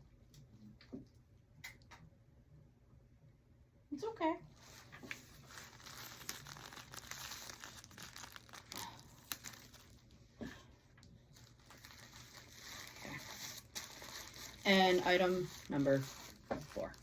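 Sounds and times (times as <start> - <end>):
packaging crinkling and rustling: 4.6 - 17.0.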